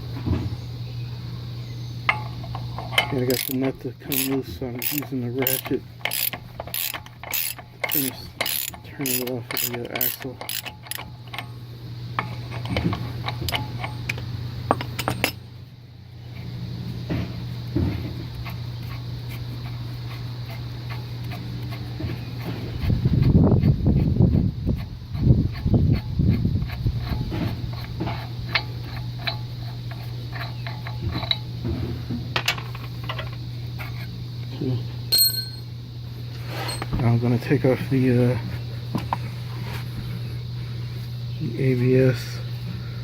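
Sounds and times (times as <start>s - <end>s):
steady low hum: 0.0s - 43.0s
ratchet metal clicks: 2.1s - 11.6s, 12.2s - 15.4s, 24.8s - 31.5s.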